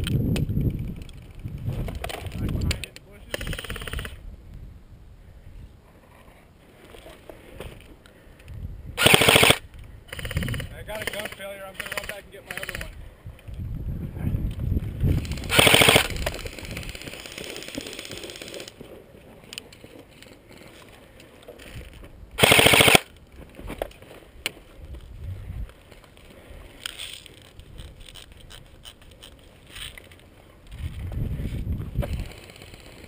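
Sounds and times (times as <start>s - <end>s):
airsoft gun full-auto fire: 9.0s - 12.9s, 15.4s - 16.2s, 22.4s - 23.1s.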